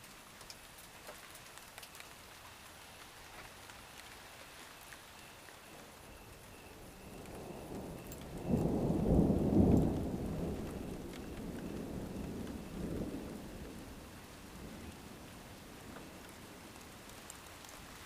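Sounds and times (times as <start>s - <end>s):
steady rain: 0.0s - 18.0s
thunder rumbling: 6.8s - 17.1s.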